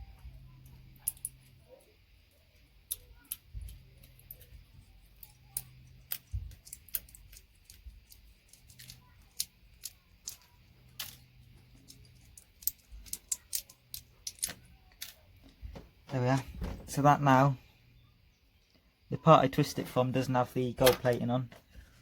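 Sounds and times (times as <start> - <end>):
small metallic clicks: 0.5 - 1.6, 2.8 - 15.6.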